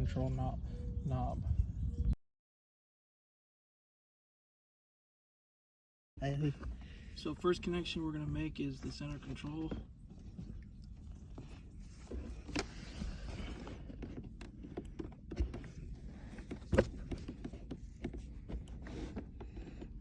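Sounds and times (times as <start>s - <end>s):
low steady rumble: 6.2s - 20.0s.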